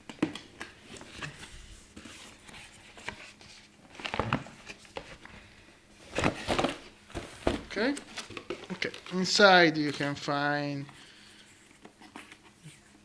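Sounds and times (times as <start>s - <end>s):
cardboard packaging handled: 6.0s - 9.3s.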